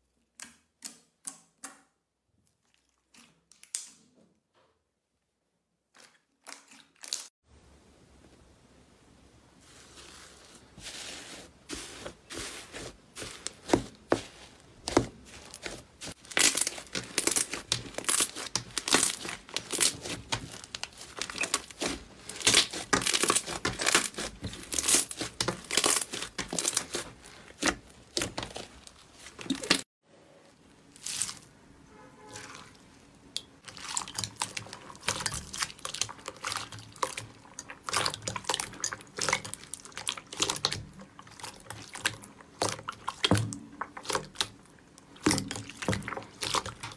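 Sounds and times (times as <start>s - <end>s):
slime crackling and popping: 13.2s - 29.8s.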